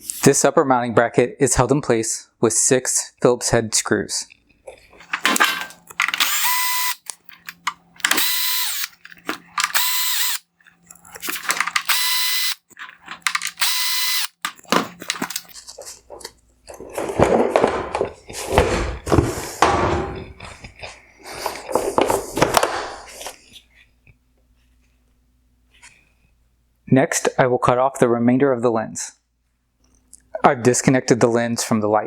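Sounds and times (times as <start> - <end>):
power screwdriver whining: 5.0 - 15.6
parts knocking and clattering: 5.0 - 20.7.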